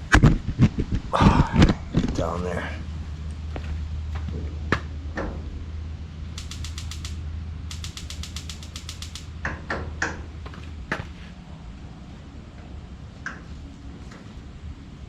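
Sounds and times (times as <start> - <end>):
steady low hum: 5.6 - 9.5
knocks: 6.4 - 9.3
spark igniter clicking rapidly: 6.4 - 9.4.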